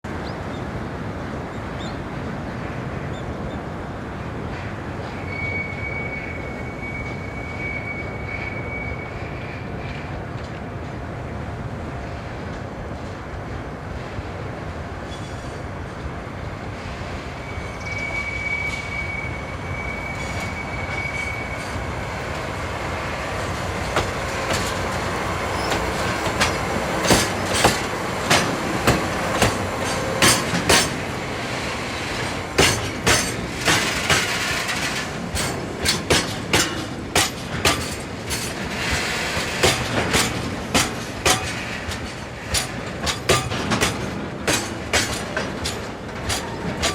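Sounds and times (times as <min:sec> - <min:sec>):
train rumble: 0:00.1 - 0:46.9
train wheel squeal: 0:04.4 - 0:10.3, 0:15.0 - 0:15.9, 0:16.7 - 0:46.9
wheels clacking over rail joints: 0:21.6 - 0:46.9.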